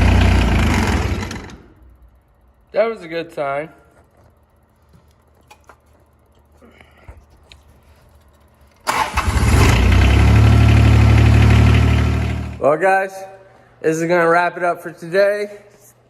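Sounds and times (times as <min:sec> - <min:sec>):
diesel engine cranking and running: 0:00.0 - 0:02.1, 0:08.8 - 0:12.6.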